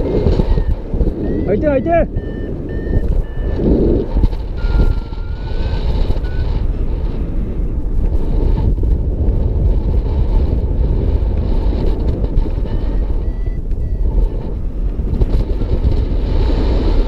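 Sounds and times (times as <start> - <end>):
variometer electronic tone: 0.0 - 8.1, 11.7 - 17.0
wind buffeting microphone: 0.0 - 17.0
short electronic beep: 0.4 - 6.6, 12.6 - 14.2.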